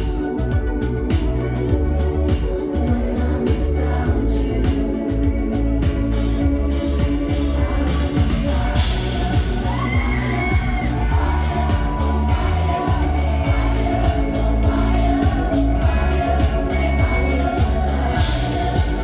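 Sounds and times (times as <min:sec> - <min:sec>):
live band playing pop music: 0:00.0 - 0:19.0
drum beat: 0:07.0 - 0:19.0
crowd shouting and whooping: 0:07.5 - 0:19.0.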